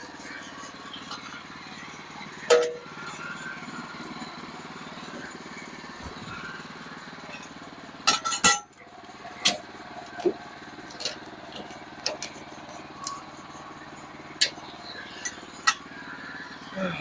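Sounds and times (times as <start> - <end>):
sawmill engine idling: 0.0 - 17.0
metal clanks and clinks: 2.4 - 3.3, 7.3 - 13.3.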